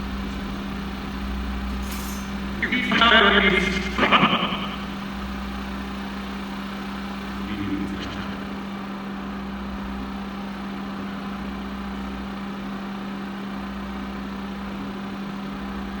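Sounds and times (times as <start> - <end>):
deep hum: 0.0 - 10.1
constant low electronic tone: 0.0 - 12.8.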